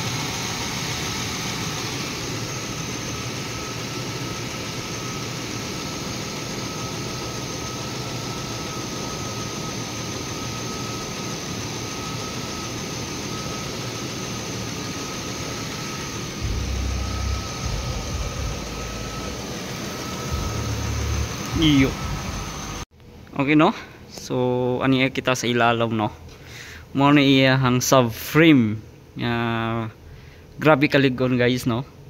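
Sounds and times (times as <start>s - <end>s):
thin constant whine: 0.0s - 32.0s
low rumble: 16.4s - 19.6s
car engine idling: 16.4s - 22.8s.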